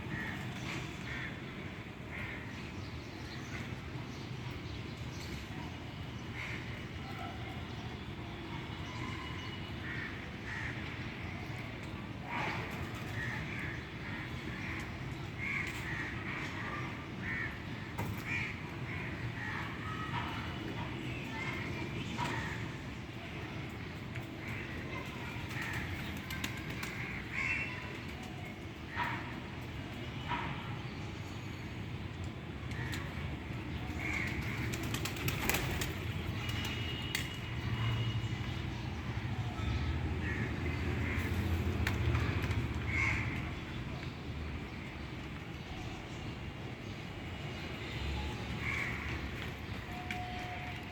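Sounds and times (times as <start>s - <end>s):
crows cawing: 15.4s - 20.4s, 24.5s - 28.0s, 34.0s - 35.5s, 40.2s - 41.6s, 42.9s - 43.6s, 48.6s - 49.2s
wings flapping: 34.1s - 37.4s.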